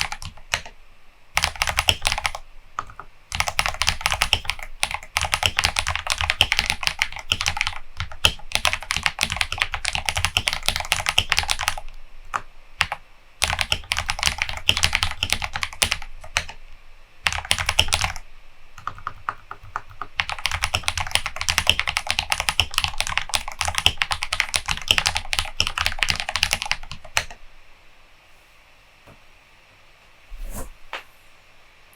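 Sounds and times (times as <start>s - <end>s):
mechanical keyboard typing: 0.0s - 0.8s, 1.4s - 16.6s, 17.3s - 18.2s, 18.8s - 27.4s.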